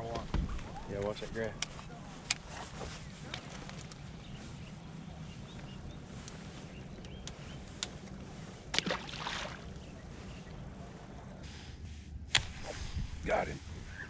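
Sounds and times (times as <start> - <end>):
boat low hum: 0.0 - 14.0.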